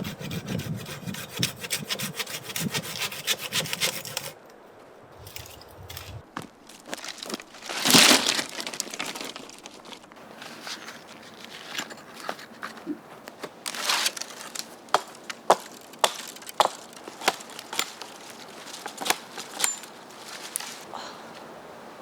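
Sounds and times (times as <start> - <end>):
dry wood cracking and crunching: 5.2 - 20.9.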